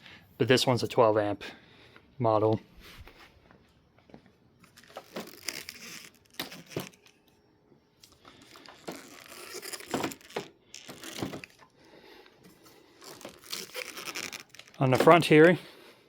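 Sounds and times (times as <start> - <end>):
handling rustling and scraping: 4.6 - 7.4, 8.0 - 15.6.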